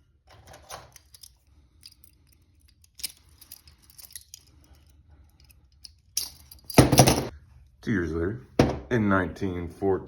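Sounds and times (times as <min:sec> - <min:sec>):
handcuffs clicking and rattling: 0:00.6 - 0:07.3.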